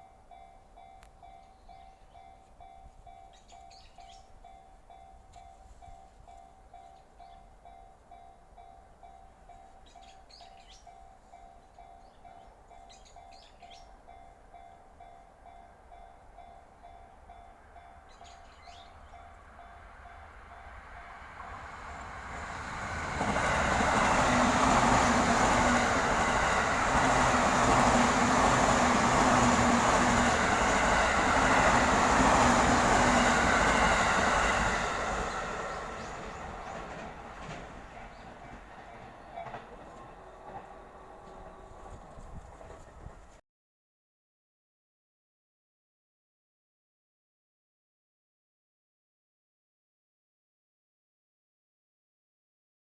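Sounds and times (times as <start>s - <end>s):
train passing close by: 0.0s - 43.4s.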